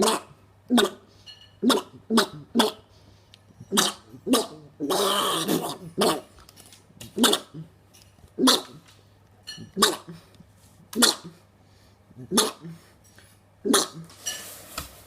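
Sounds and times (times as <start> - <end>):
dog barking: 0.0 - 1.0, 1.6 - 2.8, 3.7 - 6.3, 7.2 - 7.6, 8.4 - 8.8, 9.8 - 10.2, 11.0 - 11.4.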